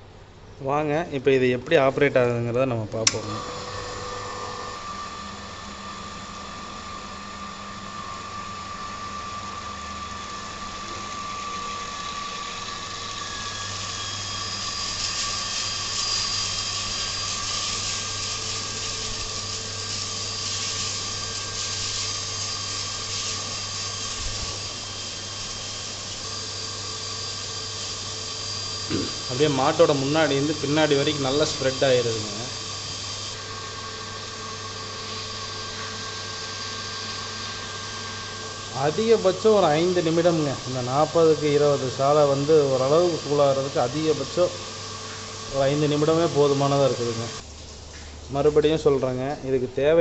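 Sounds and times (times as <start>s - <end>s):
machine hum: 2.8s - 48.6s
water mist spraying hiss: 10.4s - 48.2s.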